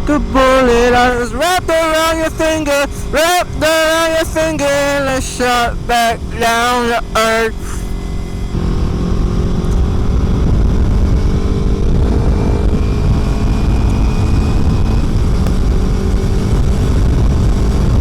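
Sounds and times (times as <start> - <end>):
motorcycle engine running: 7.8 - 18.0
wind rumble on microphone: 8.1 - 18.0.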